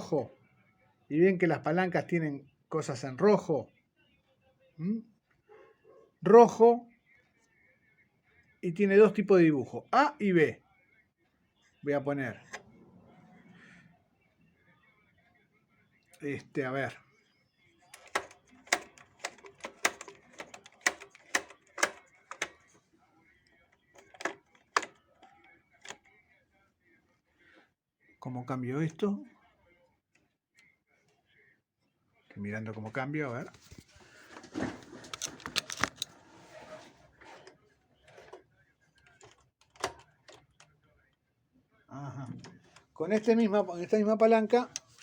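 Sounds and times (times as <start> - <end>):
sewing machine clacking: 18.0 - 22.6, 24.0 - 25.0.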